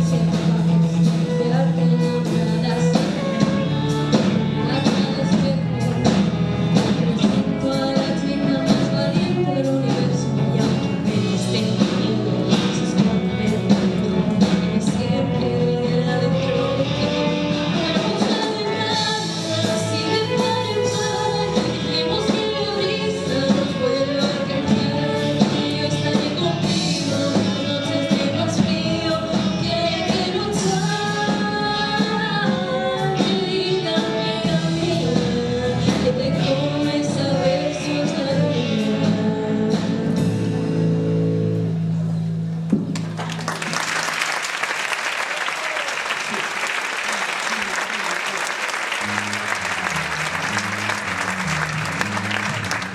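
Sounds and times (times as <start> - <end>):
live rock band playing: 0.0 - 52.9
person singing: 6.8 - 40.4.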